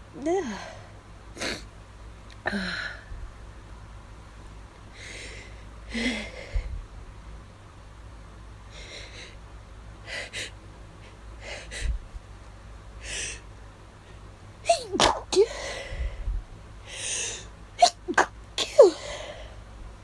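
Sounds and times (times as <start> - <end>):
person sneezing: 14.7 - 15.6.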